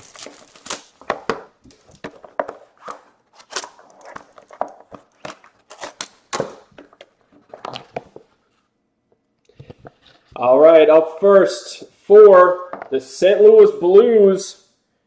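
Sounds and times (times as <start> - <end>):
cardboard and wrapper rustling: 0.0 - 8.6.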